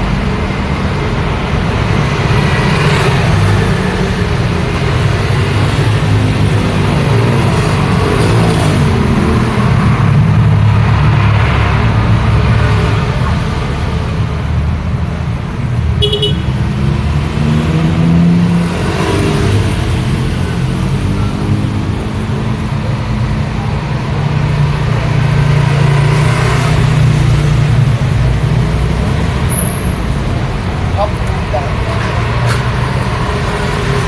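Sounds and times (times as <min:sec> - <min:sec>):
traffic passing: 0:00.0 - 0:34.0
car horn toot: 0:16.0 - 0:16.5.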